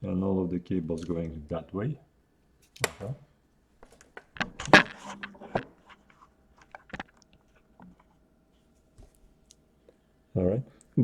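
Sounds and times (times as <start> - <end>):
faint steady hum: 0.0 - 11.0
small clicks and rustles of handling: 3.8 - 10.0.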